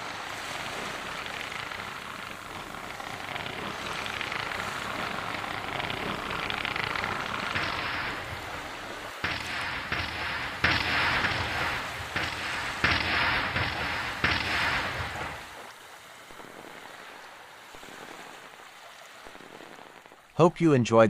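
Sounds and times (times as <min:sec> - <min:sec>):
fireworks bangs with crackling: 0:07.4 - 0:18.5.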